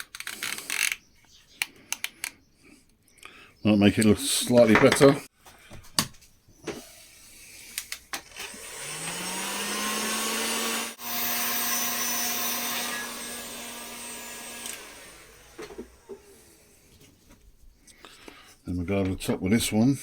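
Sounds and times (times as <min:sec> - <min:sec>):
heat gun fan humming: 0:08.2 - 0:16.9.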